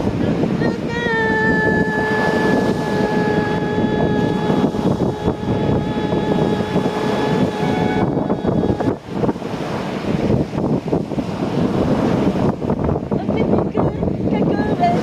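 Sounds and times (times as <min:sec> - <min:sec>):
surf: 0:00.0 - 0:15.0
wind on microphone: 0:00.0 - 0:15.0
woman singing a cappella: 0:00.6 - 0:09.0, 0:13.2 - 0:15.0.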